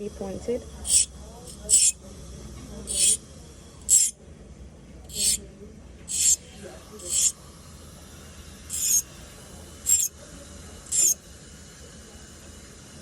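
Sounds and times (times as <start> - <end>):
metal scraping on sharpening stone: 0.9 - 2.0, 2.9 - 3.2, 3.9 - 4.1, 5.1 - 5.4, 6.1 - 6.4, 7.0 - 7.3, 8.7 - 9.0, 9.9 - 10.1, 10.9 - 11.2.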